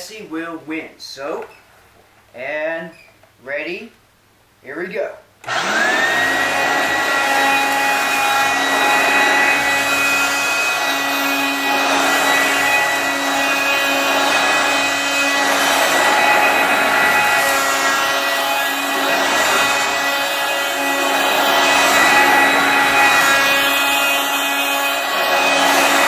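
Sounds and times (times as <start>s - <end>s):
vacuum cleaner motor: 5.4s - 26.0s.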